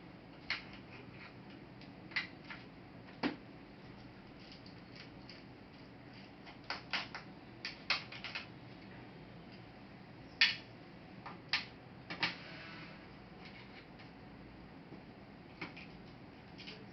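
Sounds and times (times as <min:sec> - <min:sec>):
clicks and taps of small parts: 0:06.4 - 0:08.5.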